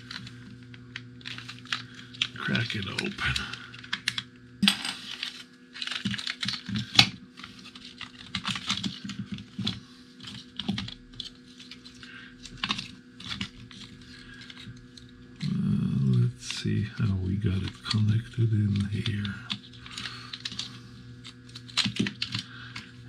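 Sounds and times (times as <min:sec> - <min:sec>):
faint steady hum: 0:00.0 - 0:23.0
plastic clicks and scrapes: 0:05.0 - 0:15.5, 0:18.6 - 0:23.0.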